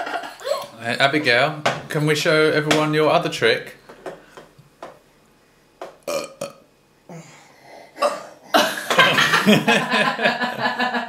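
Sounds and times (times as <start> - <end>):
child burping: 0.4 - 0.8, 6.1 - 8.7.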